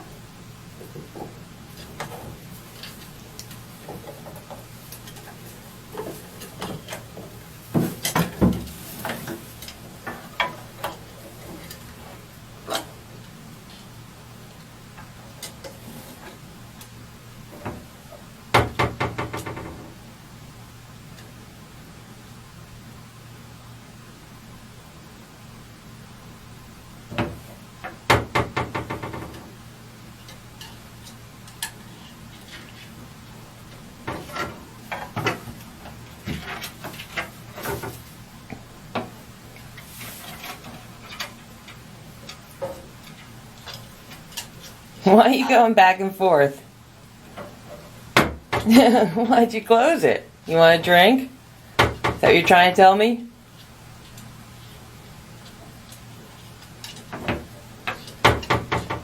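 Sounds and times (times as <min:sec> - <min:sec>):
knocking on a hard surface: 0:18.6 - 0:19.9, 0:28.1 - 0:29.4.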